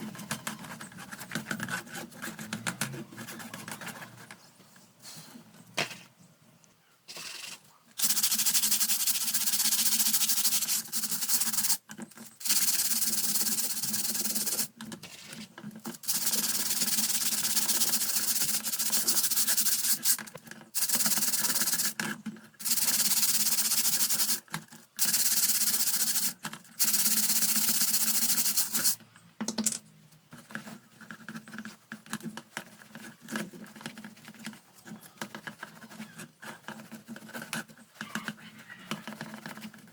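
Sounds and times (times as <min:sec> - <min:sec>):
scrubbing strokes on fan: 0:08.0 - 0:14.7, 0:15.8 - 0:20.2, 0:20.8 - 0:22.0, 0:22.6 - 0:29.0.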